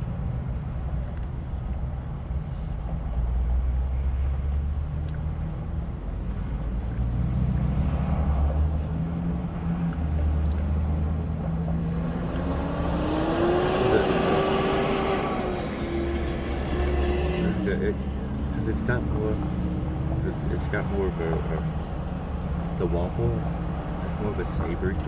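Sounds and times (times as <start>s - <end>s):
vehicle engine rumble: 0.0s - 25.0s
vehicle accelerating past: 7.1s - 22.8s.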